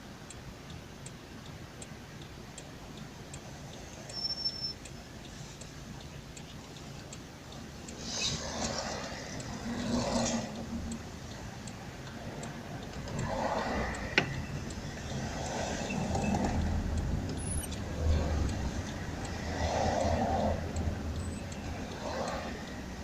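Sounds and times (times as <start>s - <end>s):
passing traffic: 0.0s - 23.0s
car engine rumble: 4.7s - 23.0s.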